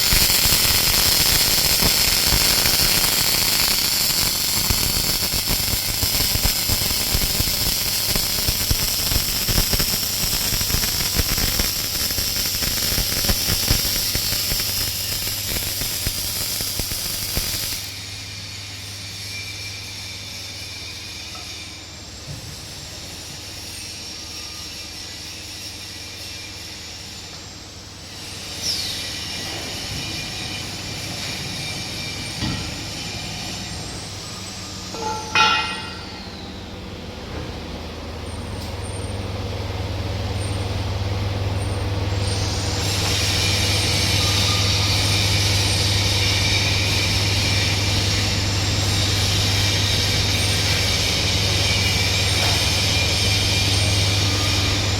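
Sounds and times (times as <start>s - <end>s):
welding machine humming: 0.0s - 21.6s, 22.6s - 54.9s
sharp metal clanks: 34.9s - 36.4s.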